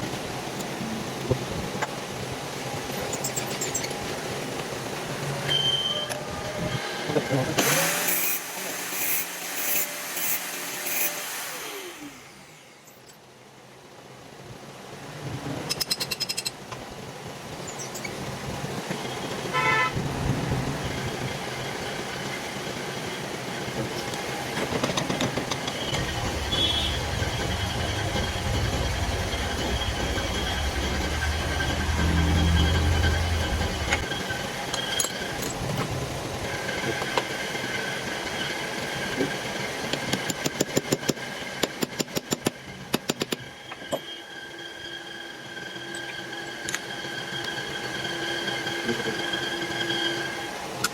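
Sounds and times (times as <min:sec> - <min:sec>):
workshop machine whine: 0:00.0 - 0:13.6, 0:16.2 - 0:50.9
vehicle horn toot: 0:19.0 - 0:20.0, 0:26.4 - 0:27.1.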